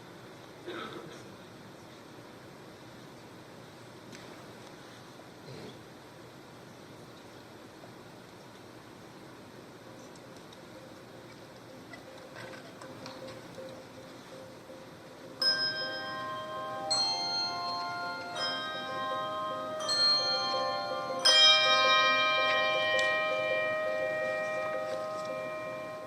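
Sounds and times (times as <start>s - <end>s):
handbell choir chords: 14.3s - 26.0s.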